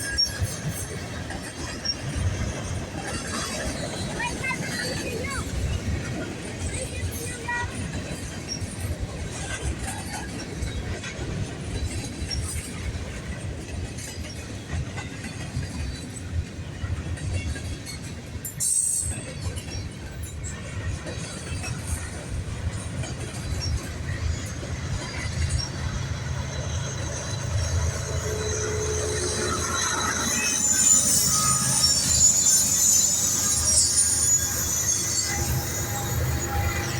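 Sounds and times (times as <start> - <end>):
train wheels rumbling on rails: 0.0 - 36.9
faint wheel squeal: 23.1 - 36.9.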